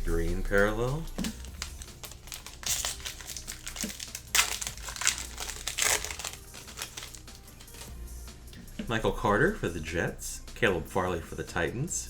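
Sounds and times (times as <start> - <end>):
foil wrapper crinkling: 1.1 - 7.9.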